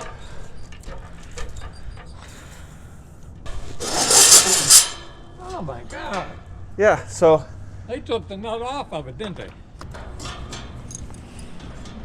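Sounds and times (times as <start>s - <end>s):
loud scraping rush: 3.5s - 5.3s.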